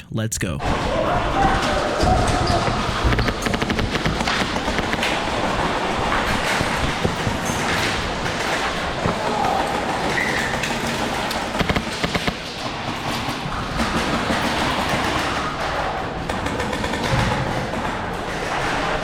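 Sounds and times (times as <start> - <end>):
airsoft gun burst: 3.0 - 7.0, 10.9 - 12.6.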